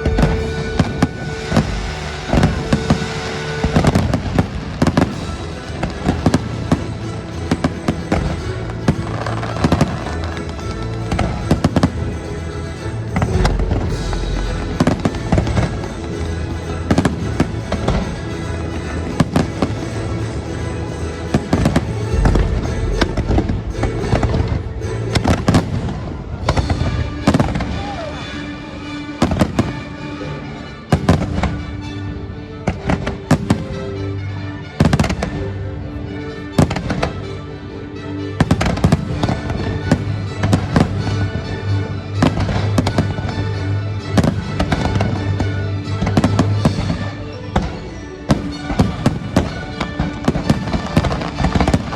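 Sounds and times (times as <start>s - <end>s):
fireworks bursting: 0.0s - 12.2s, 13.1s - 20.4s, 21.3s - 28.2s, 46.0s - 51.9s
music soundtrack: 0.0s - 51.9s.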